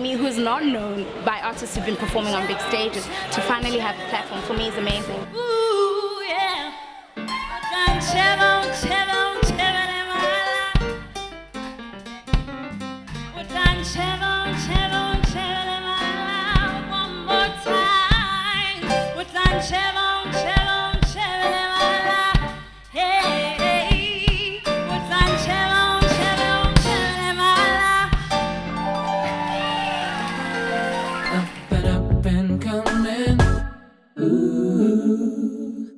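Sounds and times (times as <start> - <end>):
person singing: 7.7 - 11.0, 13.4 - 28.1, 30.5 - 35.9
soul-jazz band music: 7.7 - 33.7
drums: 12.3 - 15.6, 16.4 - 16.9, 17.5 - 28.5, 29.6 - 33.8.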